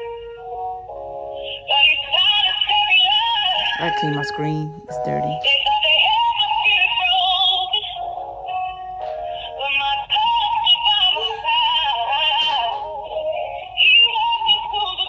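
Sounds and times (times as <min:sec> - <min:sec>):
tinny pop song from phone speaker: 0:03.8 - 0:05.4.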